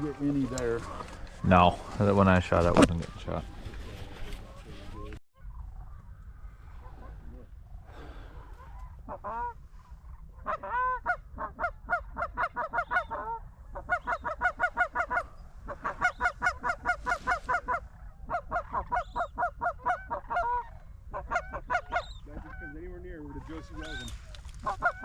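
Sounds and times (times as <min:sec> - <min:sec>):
goose honking: 0:08.6 - 0:09.6, 0:10.4 - 0:25.0.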